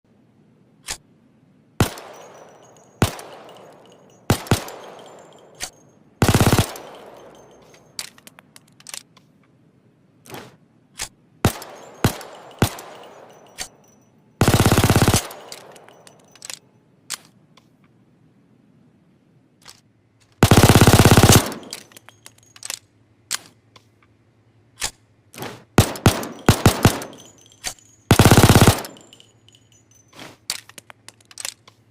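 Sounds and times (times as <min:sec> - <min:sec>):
gunshot echo: 0:01.8 - 0:05.7, 0:11.5 - 0:13.8
pistol shots and bursts: 0:01.8 - 0:09.1, 0:10.3 - 0:17.3, 0:20.4 - 0:23.6, 0:24.8 - 0:31.6.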